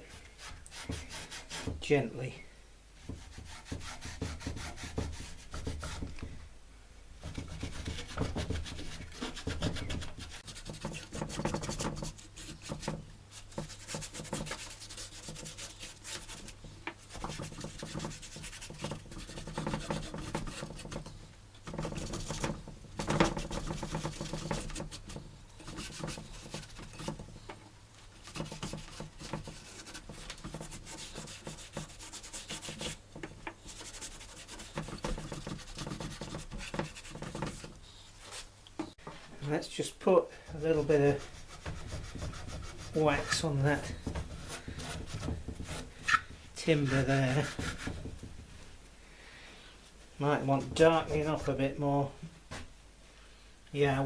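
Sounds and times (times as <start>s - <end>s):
hand rubbing on wood: 7.5s - 39.0s.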